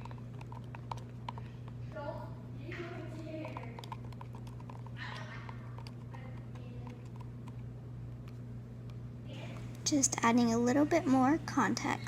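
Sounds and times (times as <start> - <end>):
slime stirred with utensil: 0.0 - 1.9, 3.1 - 8.4
steady low hum: 0.0 - 12.0.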